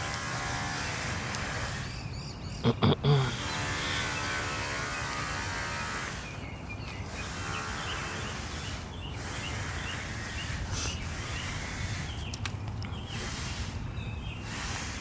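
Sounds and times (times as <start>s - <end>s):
small birds chirping: 0.0s - 15.0s
sharp clicks: 12.2s - 13.0s.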